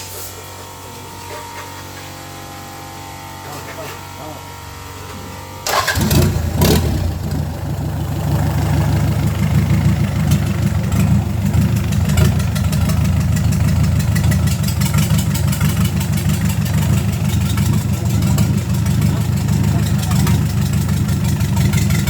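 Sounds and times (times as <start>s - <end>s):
diesel engine idling: 4.4s - 22.0s.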